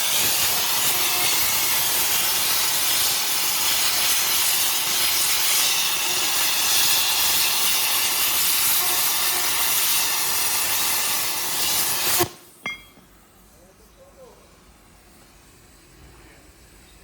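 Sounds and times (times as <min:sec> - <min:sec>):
plasma torch hissing: 0:00.0 - 0:12.6.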